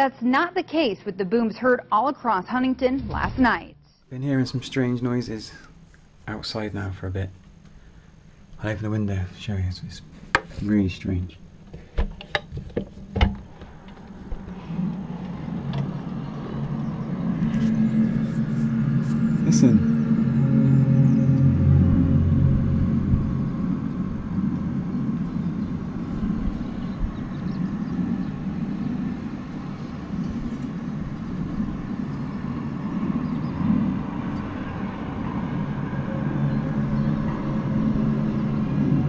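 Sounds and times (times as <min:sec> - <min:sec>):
low droning rumble: 0:01.9 - 0:11.6, 0:12.6 - 0:39.0
held low tones: 0:13.1 - 0:39.0.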